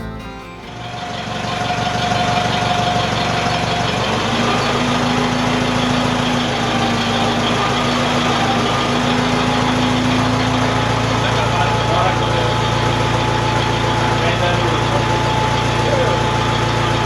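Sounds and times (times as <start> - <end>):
steady tone: 0.0 - 3.0
loader engine idling: 0.0 - 17.0.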